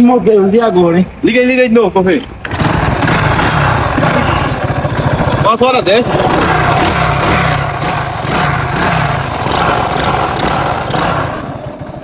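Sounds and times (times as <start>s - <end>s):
motorcycle engine knocking: 2.5s - 12.0s.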